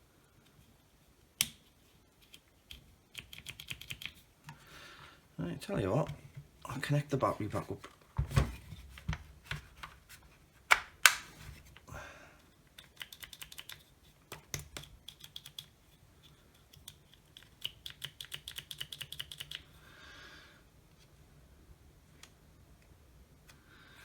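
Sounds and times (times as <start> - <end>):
loud plastic clicks: 10.7 - 11.3.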